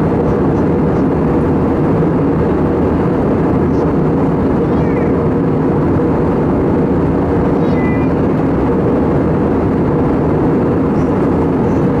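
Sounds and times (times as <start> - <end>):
jet engine cabin rumble: 0.0 - 12.0.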